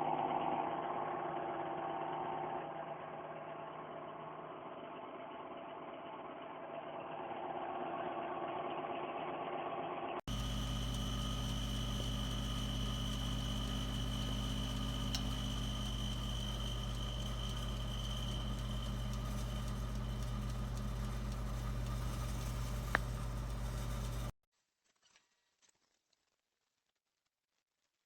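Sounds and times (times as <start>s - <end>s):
faint high whine: 10.3s - 24.3s
toaster oven humming: 10.3s - 24.3s.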